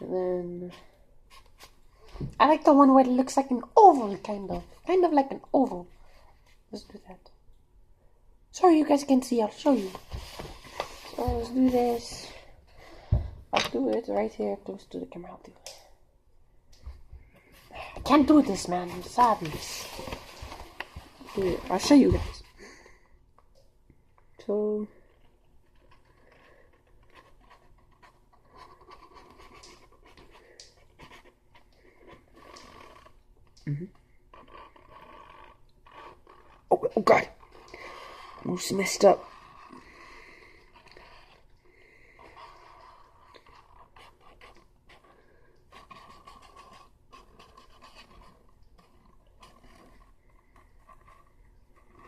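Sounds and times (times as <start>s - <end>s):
marker scratching on cardboard: 32.0s - 33.2s, 34.4s - 36.7s, 42.3s - 50.1s.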